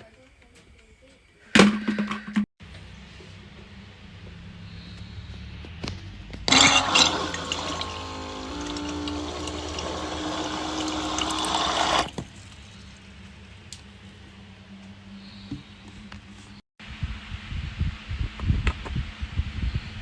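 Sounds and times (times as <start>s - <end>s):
tap water filling a tank: 6.5s - 12.3s.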